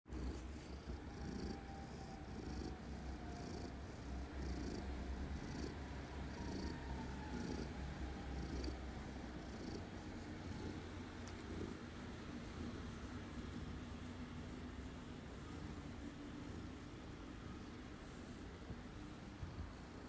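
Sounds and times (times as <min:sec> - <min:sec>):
cat purring: 0:00.1 - 0:20.0
soft hiss: 0:07.4 - 0:20.0.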